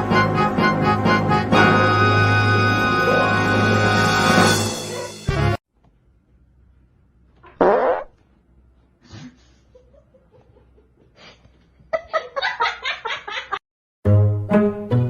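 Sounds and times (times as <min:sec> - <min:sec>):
fart-like blurt: 0:07.5 - 0:08.2.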